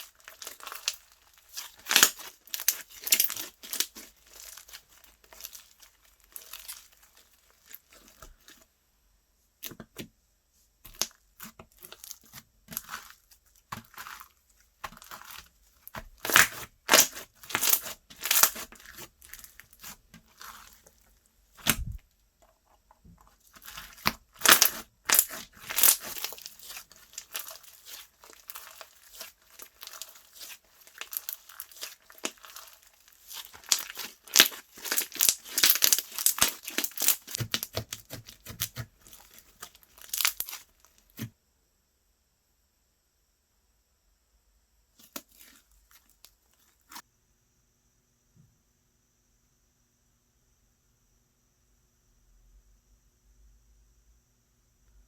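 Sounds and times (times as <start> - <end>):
slime squeezed by hand: 14.8 - 20.8, 21.6 - 22.0, 23.5 - 41.3.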